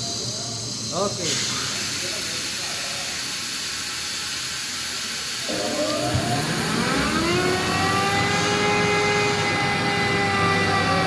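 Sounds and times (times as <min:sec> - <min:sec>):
air compressor whine: 0:00.0 - 0:11.0
steady hiss of air: 0:00.0 - 0:11.0.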